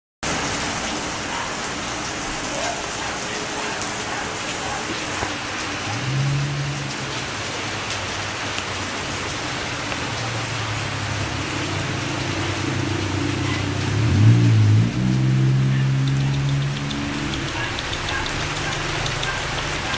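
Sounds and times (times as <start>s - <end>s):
steady rain falling: 0.2s - 19.9s
drops ticking on a surface: 16.0s - 19.9s.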